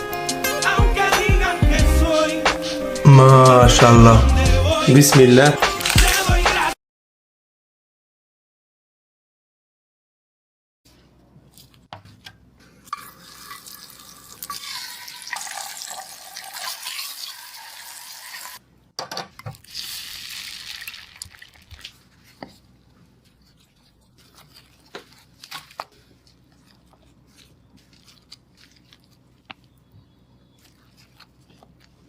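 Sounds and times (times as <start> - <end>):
liquid pouring: 12.9 - 18.6, 19.6 - 22.0.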